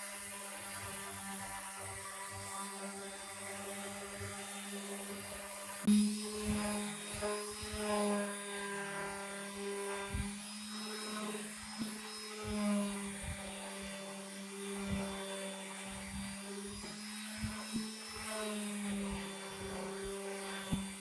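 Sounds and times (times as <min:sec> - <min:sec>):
power tool motor running: 0:00.1 - 0:21.0.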